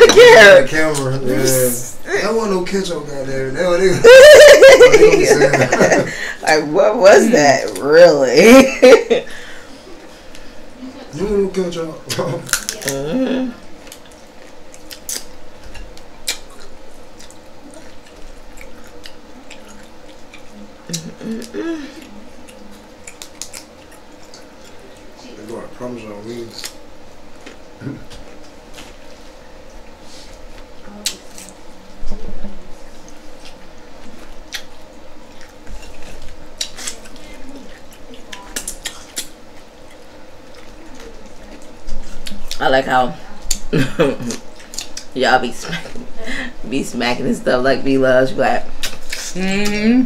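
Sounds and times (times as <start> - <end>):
wet eating sounds: 12.1 - 25.7, 32.6 - 42.7, 43.3 - 45.2, 48.7 - 50.0.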